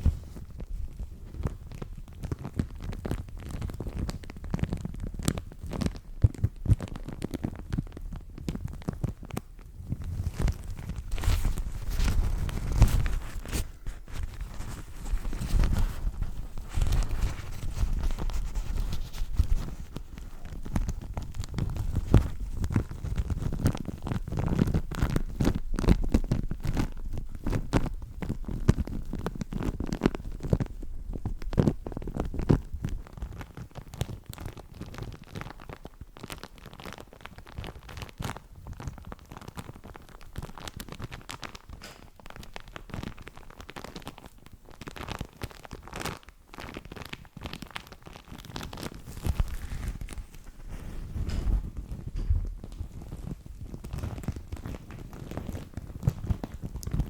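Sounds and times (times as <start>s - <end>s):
paper napkin crumpling: 9.8s - 34.0s, 39.3s - 57.0s.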